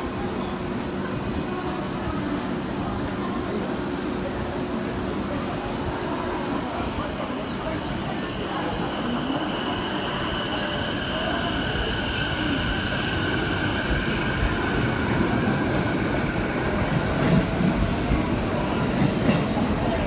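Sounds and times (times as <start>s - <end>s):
train rail rumble: 6.7s - 20.0s.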